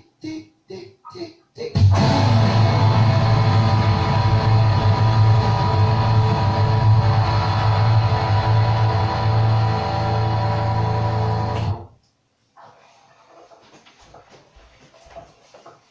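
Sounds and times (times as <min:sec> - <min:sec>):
plucked guitar notes: 0:01.9 - 0:11.8
held guitar chord: 0:02.0 - 0:11.8
low drone: 0:02.0 - 0:11.9.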